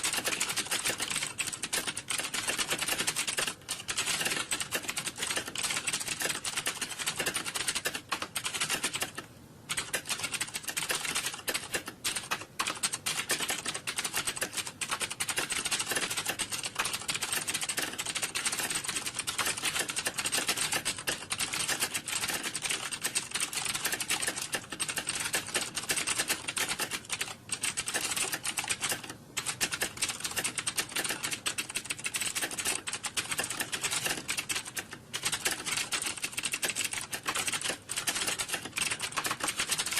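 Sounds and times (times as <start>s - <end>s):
computer keyboard typing: 0.0s - 39.9s.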